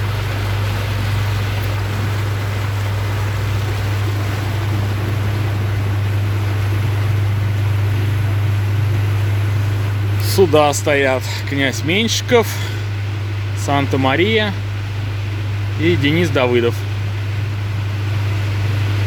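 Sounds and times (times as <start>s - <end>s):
boat engine drone: 0.0s - 19.0s
water rushing: 0.0s - 19.0s.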